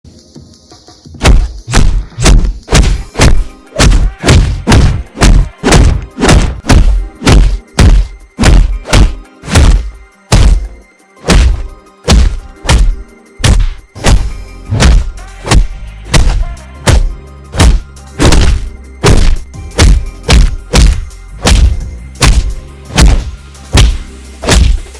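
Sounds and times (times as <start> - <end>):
punch and hit impacts: 1.2 - 24.9.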